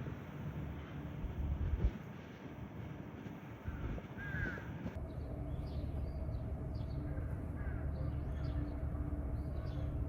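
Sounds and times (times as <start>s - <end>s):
bird calling: 3.6s - 4.9s.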